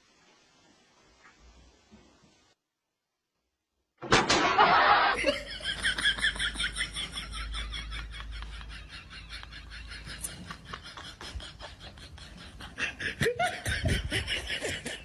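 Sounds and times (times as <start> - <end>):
rhythmic laughter: 4.6 - 15.0.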